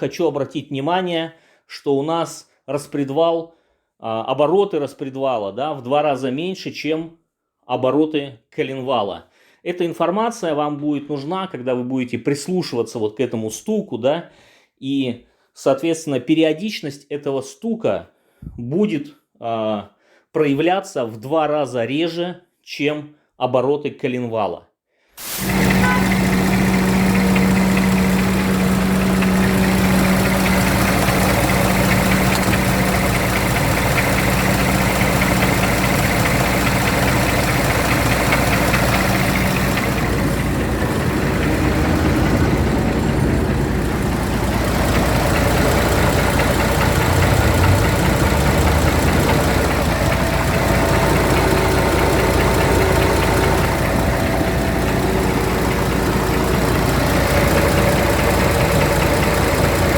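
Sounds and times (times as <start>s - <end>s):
diesel truck engine running: 25.2s - 59.9s
engine knocking: 25.2s - 59.9s.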